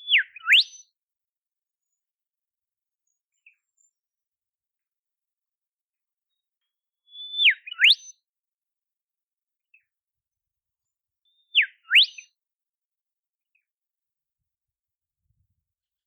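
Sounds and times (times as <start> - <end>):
bird whistling call: 0.0 - 0.8, 7.1 - 8.1, 11.4 - 12.2.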